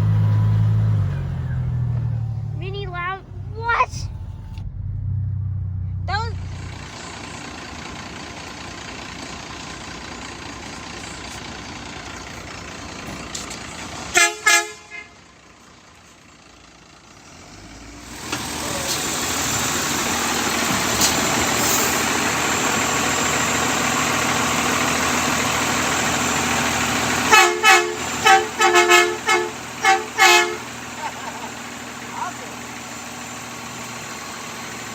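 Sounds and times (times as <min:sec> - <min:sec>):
truck driving past: 0:00.0 - 0:34.9
truck air horn tooting: 0:14.1 - 0:15.2, 0:27.2 - 0:31.0.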